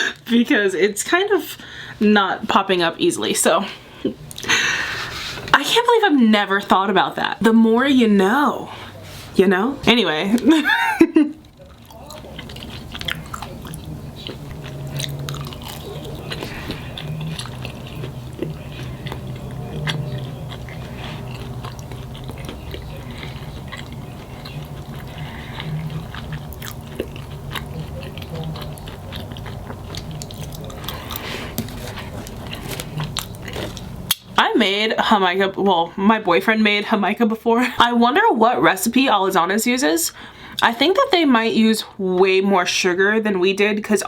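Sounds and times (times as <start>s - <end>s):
low steady hum: 0.0s - 43.5s
chewing and biting food: 11.4s - 34.3s.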